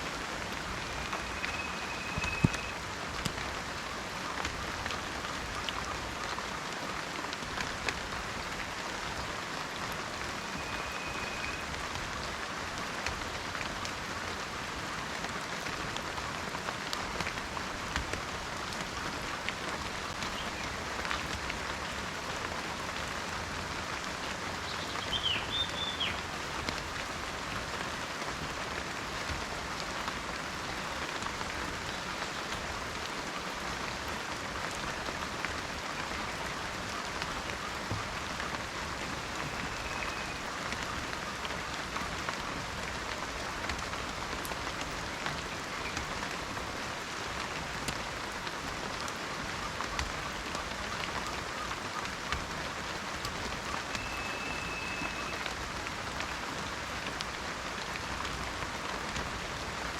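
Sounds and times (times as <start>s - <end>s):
rain falling in forest: 0.0s - 59.9s
faint high whistles: 0.8s - 2.8s, 54.0s - 55.5s.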